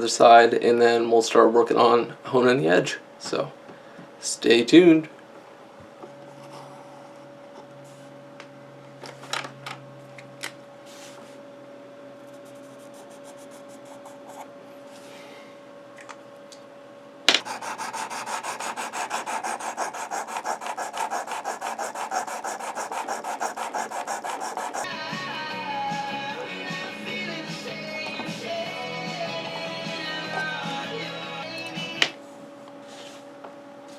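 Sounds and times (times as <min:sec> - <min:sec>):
sharpening stone rasping on blade: 0:17.4 - 0:24.9.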